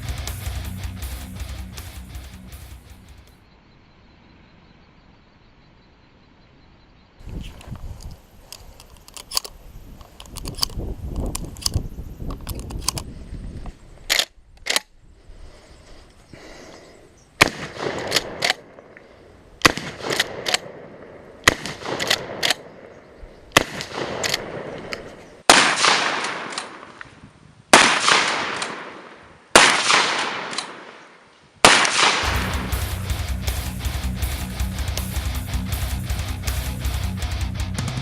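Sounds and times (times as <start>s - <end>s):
small clicks: 7.3s - 14.9s
shotgun shots: 17.4s - 18.8s, 19.6s - 22.9s, 23.5s - 24.9s, 25.5s - 27.1s, 27.7s - 31.0s, 31.6s - 33.2s.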